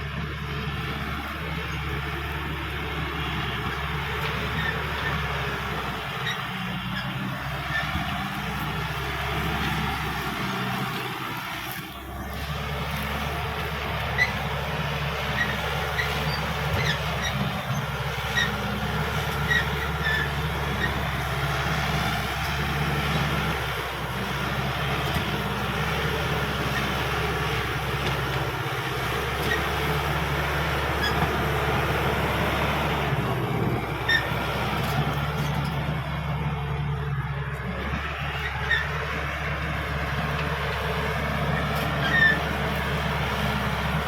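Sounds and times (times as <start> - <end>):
bulldozer diesel engine running: 0.0 - 44.0
steel tracks squeaking and clanking: 1.6 - 8.6, 13.3 - 21.8, 29.3 - 30.2, 30.8 - 33.1, 33.9 - 35.9, 38.0 - 39.2, 41.4 - 42.8.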